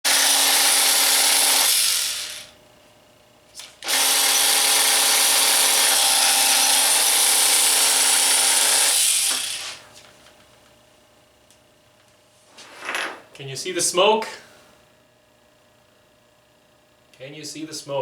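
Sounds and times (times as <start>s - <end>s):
hammer drill motor running rough: 0.1s - 2.5s, 3.8s - 9.8s.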